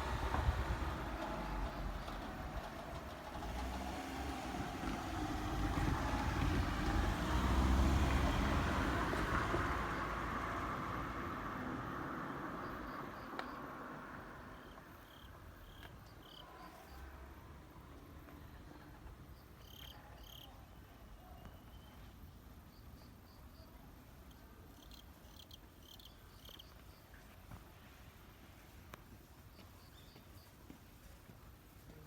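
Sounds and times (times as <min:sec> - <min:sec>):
passing train: 0:00.0 - 0:20.5.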